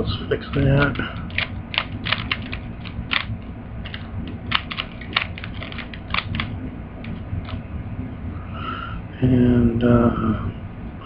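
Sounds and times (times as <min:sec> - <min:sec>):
puzzle cube layers clicking: 0:00.8 - 0:03.3, 0:03.9 - 0:06.5.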